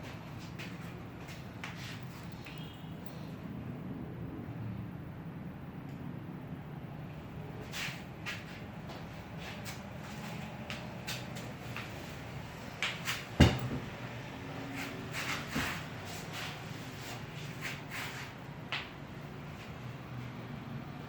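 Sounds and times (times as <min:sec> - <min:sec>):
loud thud: 0:13.4 - 0:13.9.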